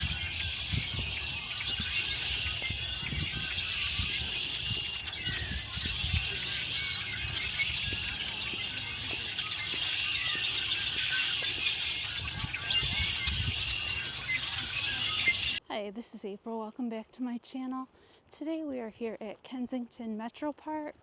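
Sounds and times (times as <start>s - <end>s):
small birds chirping and trilling: 0.0s - 15.6s.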